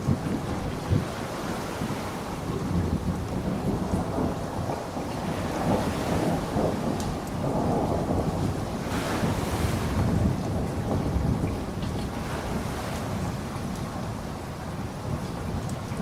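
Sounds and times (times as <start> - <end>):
rolling thunder: 0.0 - 16.0
steady rain hiss: 0.0 - 16.0
raindrop ticks: 6.6 - 8.0, 15.2 - 16.0.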